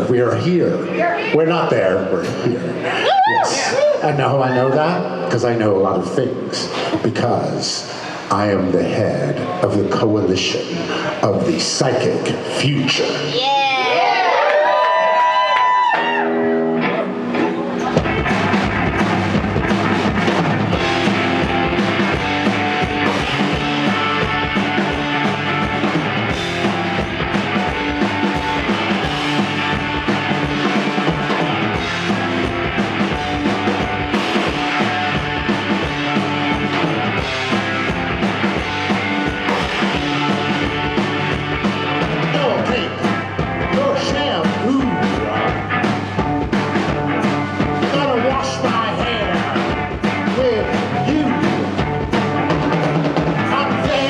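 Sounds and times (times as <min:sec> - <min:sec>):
electric guitar: 0:13.2 - 0:54.0
drum kit beat: 0:17.3 - 0:54.0.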